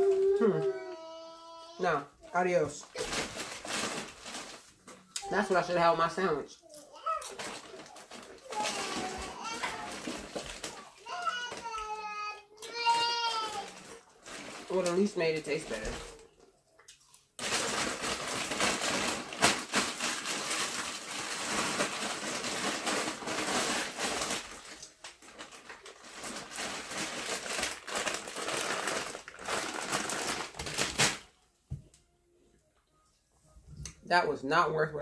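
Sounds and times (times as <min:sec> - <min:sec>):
snack bag crackling: 0:03.0 - 0:05.2, 0:06.9 - 0:12.0, 0:12.7 - 0:15.2, 0:17.3 - 0:31.3.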